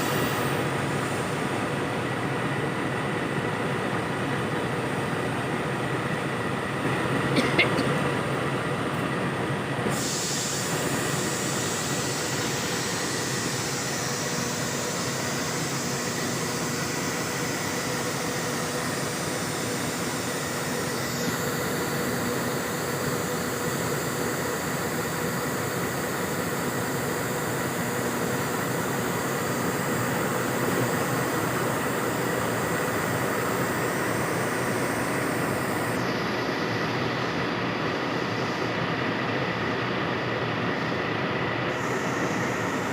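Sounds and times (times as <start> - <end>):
locomotive engine droning: 0.0 - 42.9
high hiss: 9.8 - 38.8, 41.7 - 42.9.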